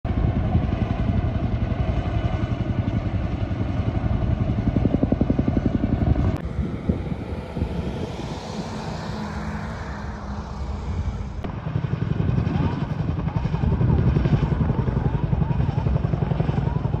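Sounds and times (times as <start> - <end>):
engine rumbling: 0.2 - 11.6.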